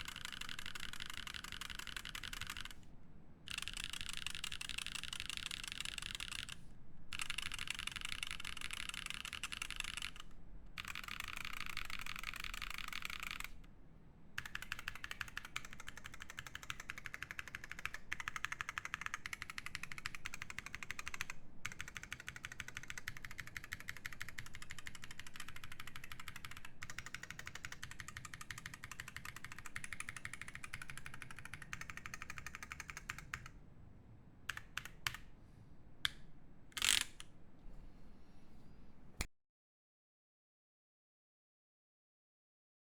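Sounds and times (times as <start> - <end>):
fast mechanical keyboard typing: 0.0 - 2.8, 3.5 - 13.6, 14.4 - 33.6, 34.5 - 35.2, 36.8 - 37.2.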